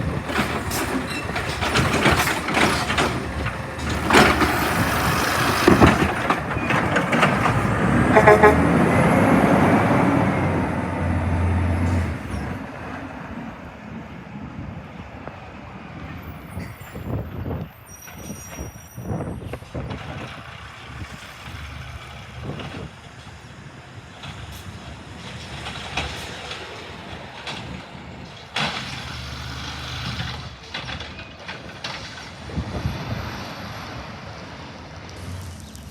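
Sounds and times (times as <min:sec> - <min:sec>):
garbage truck running: 0:00.0 - 0:16.4, 0:19.0 - 0:35.9
high squeal: 0:16.2 - 0:19.6.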